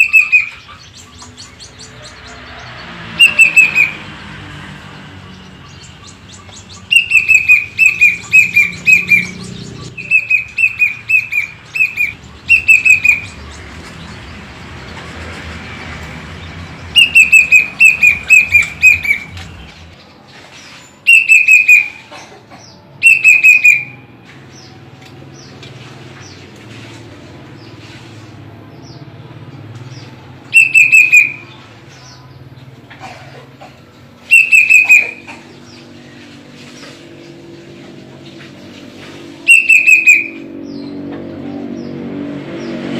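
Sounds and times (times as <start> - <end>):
cuckoo whistled calls: 0.0 - 2.4, 3.2 - 4.0, 6.0 - 13.4, 17.0 - 19.4, 21.0 - 22.2, 23.0 - 24.1, 30.5 - 31.6, 34.2 - 35.7, 39.4 - 40.5.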